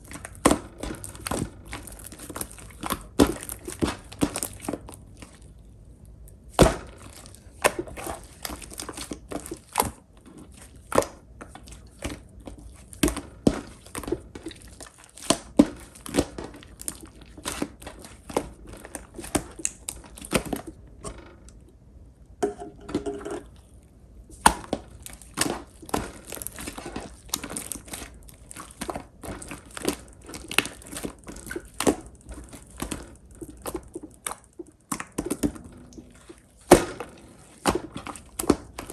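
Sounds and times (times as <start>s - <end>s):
slime popping and crackling: 0.0s - 5.5s, 24.4s - 38.9s.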